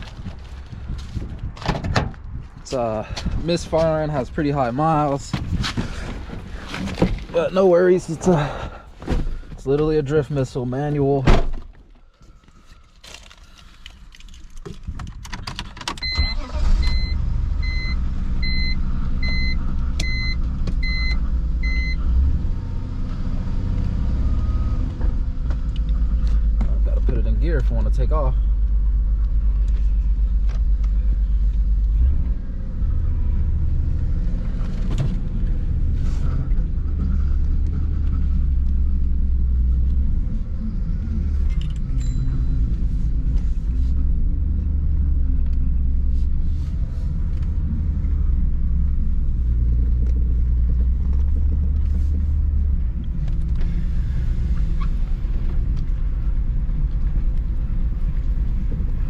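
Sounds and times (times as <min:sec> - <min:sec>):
road noise: 0:00.0 - 0:59.0
low engine drone: 0:16.8 - 0:59.0.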